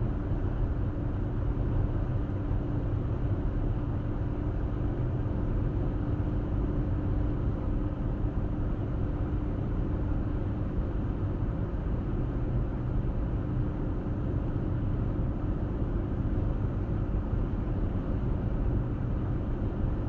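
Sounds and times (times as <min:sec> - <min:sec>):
faint steady hum: 0:00.0 - 0:20.0.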